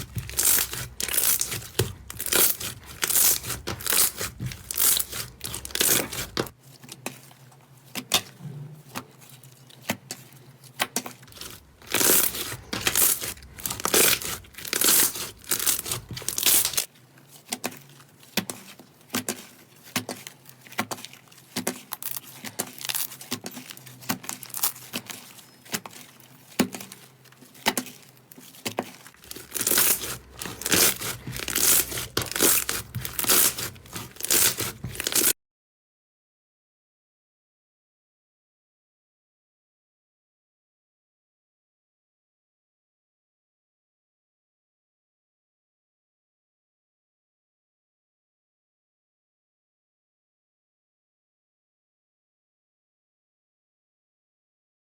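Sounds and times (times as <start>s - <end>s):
slime squeezed crackling: 0.0s - 6.5s, 11.3s - 16.9s, 29.2s - 35.3s.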